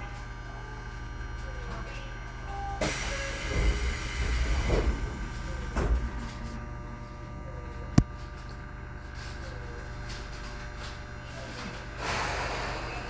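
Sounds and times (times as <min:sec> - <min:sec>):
train car steady hum: 0:00.0 - 0:07.8.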